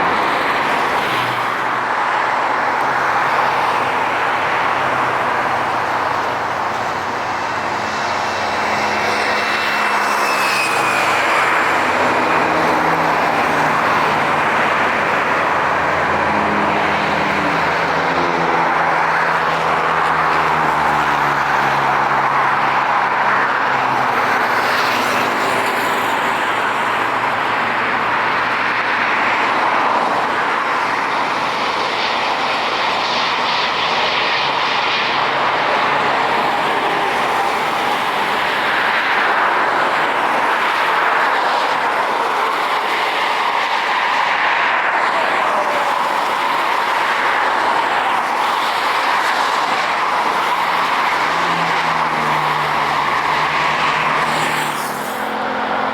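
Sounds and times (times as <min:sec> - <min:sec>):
jet airliner engines roaring: 0:00.0 - 0:55.9.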